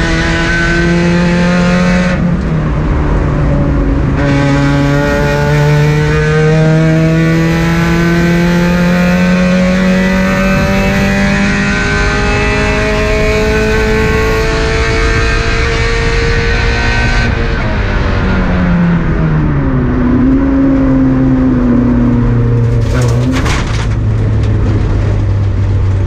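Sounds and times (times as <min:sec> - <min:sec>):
car engine revving hard: 0:00.0 - 0:19.2
road and wind noise: 0:00.0 - 0:26.0.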